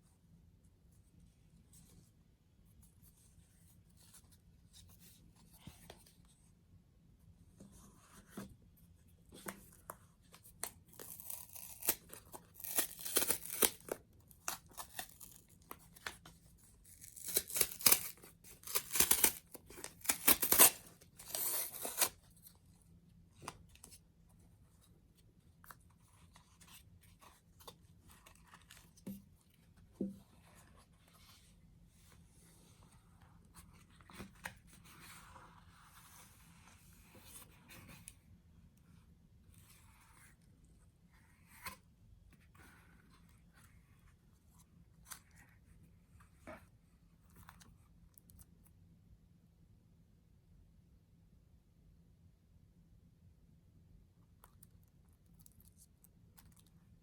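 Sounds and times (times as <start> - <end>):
packaging tearing: 11.0 - 15.5, 17.0 - 22.1.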